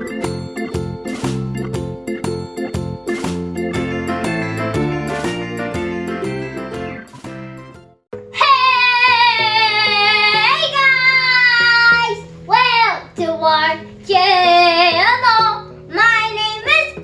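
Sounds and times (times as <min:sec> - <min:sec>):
sustained backing chords: 0:00.0 - 0:08.0.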